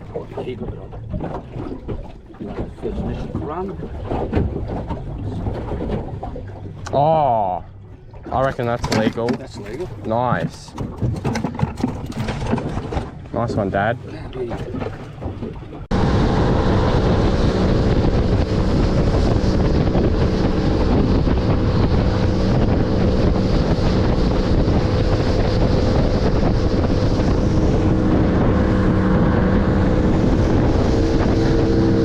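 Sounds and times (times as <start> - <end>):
outboard motor running: 0.0 - 32.0
wind on microphone: 8.8 - 32.0.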